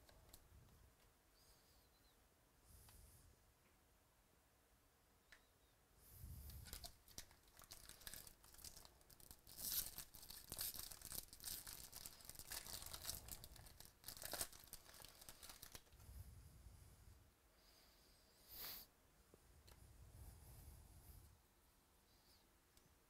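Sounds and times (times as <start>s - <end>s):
wrappers tearing and crinkling: 6.6s - 15.9s.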